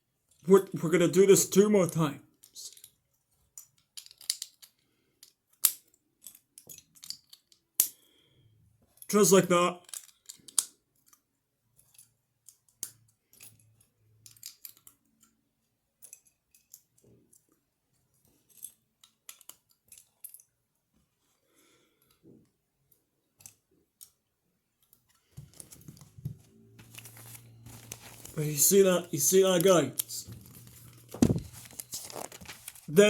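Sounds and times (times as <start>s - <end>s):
plastic bricks clicking and rattling: 3.6s - 7.9s.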